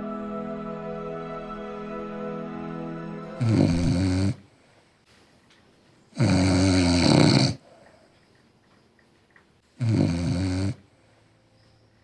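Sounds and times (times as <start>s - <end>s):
person snoring loudly: 3.3s - 4.5s, 6.2s - 7.6s, 9.8s - 10.9s
quiet breathing: 3.4s - 5.5s, 7.6s - 8.4s, 10.7s - 12.0s.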